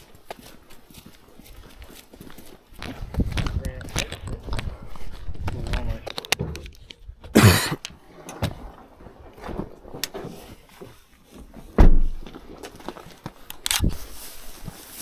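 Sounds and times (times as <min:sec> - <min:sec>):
footsteps through brush: 0:00.0 - 0:06.0, 0:12.2 - 0:15.0
heavy thump: 0:11.8 - 0:12.4.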